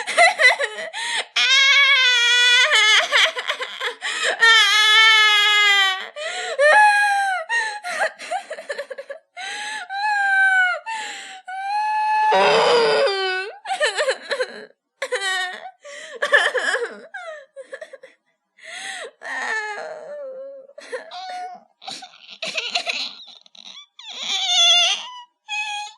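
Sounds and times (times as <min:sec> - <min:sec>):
infant crying: 0:00.4 - 0:07.5, 0:11.5 - 0:14.5, 0:19.2 - 0:25.9.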